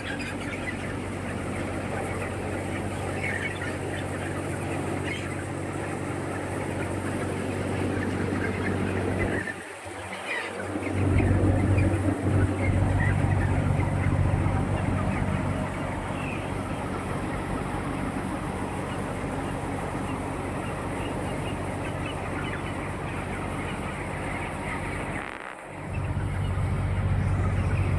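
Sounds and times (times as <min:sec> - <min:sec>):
chickens clucking: 0:00.0 - 0:27.9
steady low rumble: 0:10.7 - 0:27.9.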